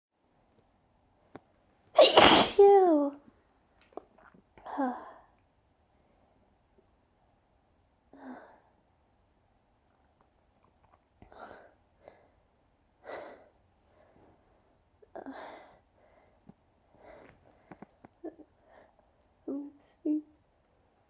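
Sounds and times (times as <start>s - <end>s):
person sneezing and gasping: 2.0s - 2.7s.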